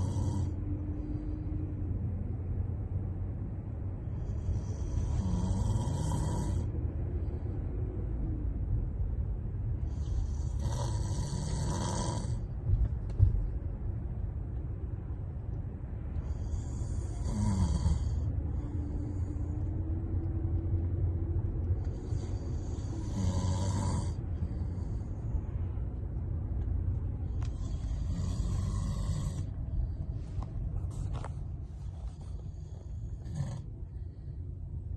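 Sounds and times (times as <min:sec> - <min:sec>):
person snoring: 0:00.0 - 0:00.6, 0:04.4 - 0:06.7, 0:10.1 - 0:12.4, 0:16.3 - 0:19.4, 0:21.9 - 0:25.0, 0:27.5 - 0:29.6, 0:32.6 - 0:33.7
steady low rumble: 0:00.0 - 0:34.9.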